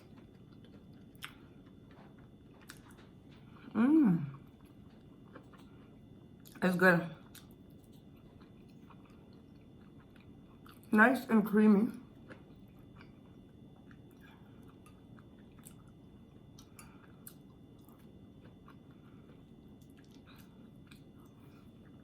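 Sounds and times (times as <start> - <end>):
chewing soft food: 0.0 - 6.6, 7.2 - 11.0, 12.0 - 22.0.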